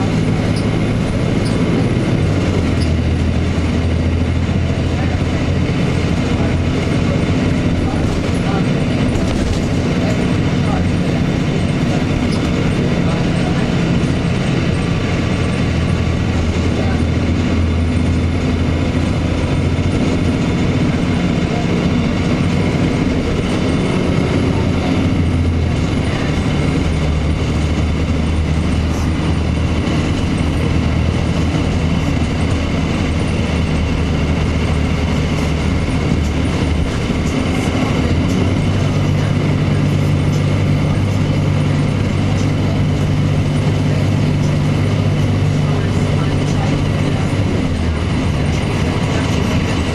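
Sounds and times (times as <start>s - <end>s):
bus body rattles: 0.0s - 49.9s
bus diesel engine droning: 0.0s - 49.9s.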